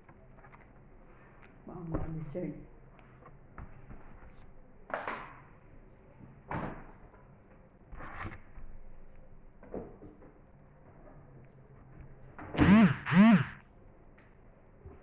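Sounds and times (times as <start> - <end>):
books rustling and knocking: 7.9 - 8.9.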